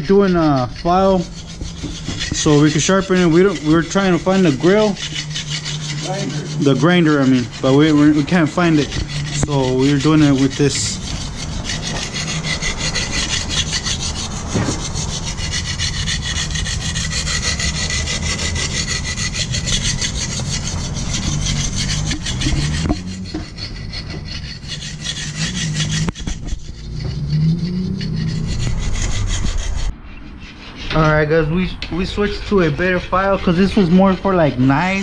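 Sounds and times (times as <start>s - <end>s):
file rasping on steel blade: 0.0s - 35.0s.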